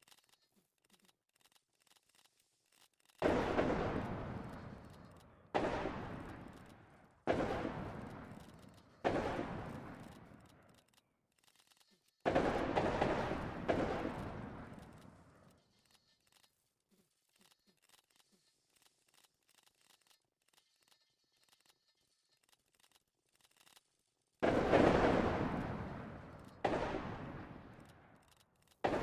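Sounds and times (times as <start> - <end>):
distant musket shots echoing: 3.2 - 10.5, 12.3 - 15.0, 24.4 - 28.2.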